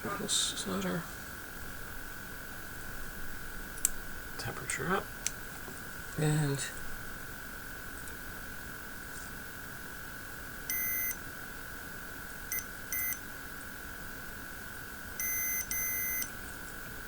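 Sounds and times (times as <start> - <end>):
steady high whine: 0.0 - 17.0
soldering station beeps: 10.7 - 11.2, 12.5 - 13.2, 15.2 - 16.4.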